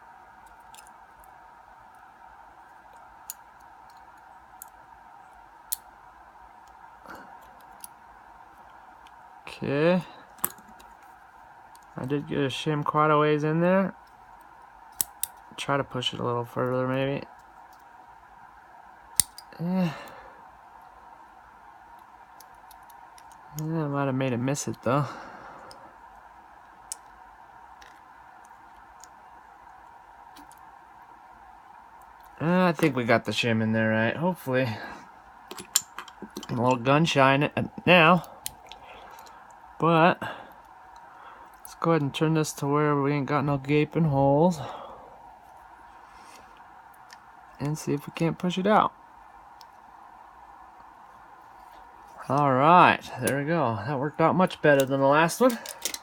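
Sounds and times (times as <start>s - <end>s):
faint hum: 0.0s - 56.0s
steady faint hiss: 0.0s - 56.0s
shim clicking in padlock: 19.2s - 19.5s.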